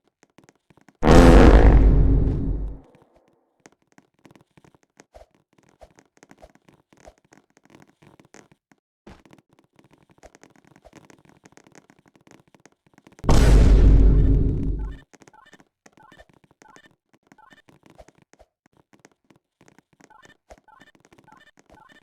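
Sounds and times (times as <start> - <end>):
loud blast: 1.0 - 2.8, 13.3 - 15.0.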